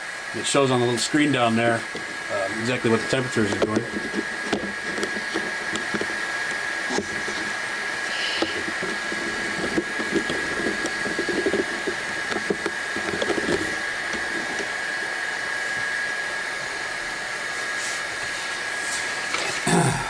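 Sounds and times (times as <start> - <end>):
cooling fans with high whine: 0.0 - 20.0.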